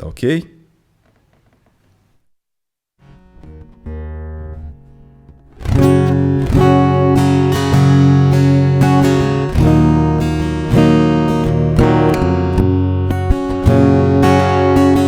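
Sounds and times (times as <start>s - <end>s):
acoustic guitar strummed chords: 3.0s - 15.0s.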